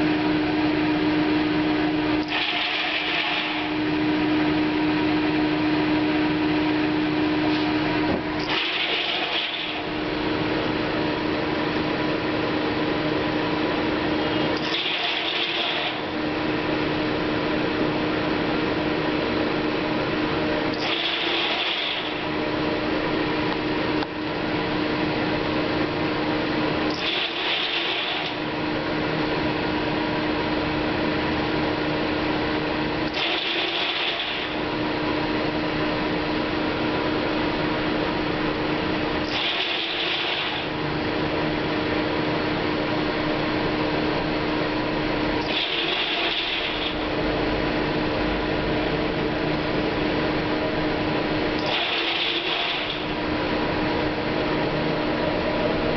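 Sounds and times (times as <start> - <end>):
higher-pitched machine sound: 0.0 - 10.3, 14.2 - 16.4, 20.7 - 22.4, 26.9 - 28.5, 33.1 - 34.7, 39.2 - 40.8, 45.4 - 47.1, 51.6 - 53.4
grain dryer machinery humming: 0.0 - 55.9.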